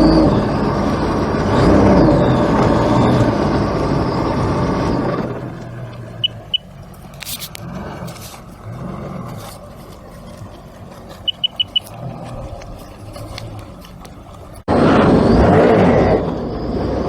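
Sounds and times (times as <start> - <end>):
heavy equipment engine under load: 0.0 - 17.0
short high peeps: 6.2 - 6.7, 11.2 - 11.9.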